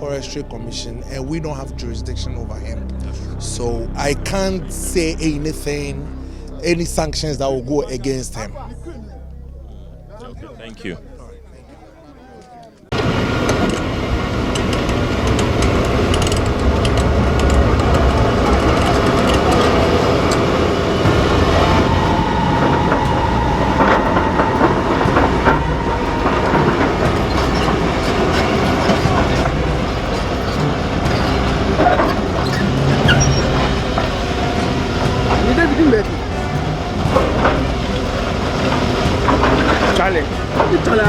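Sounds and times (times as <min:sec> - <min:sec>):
machinery squealing: 0:00.0 - 0:12.2, 0:12.9 - 0:41.0
diesel engine rumbling: 0:00.0 - 0:12.3, 0:12.9 - 0:41.0
metallic clanking and knocking: 0:13.5 - 0:41.0.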